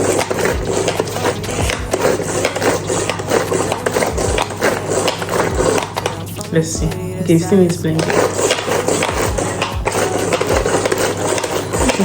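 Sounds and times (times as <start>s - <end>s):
blender motor hum: 0.0s - 6.2s, 8.0s - 12.0s.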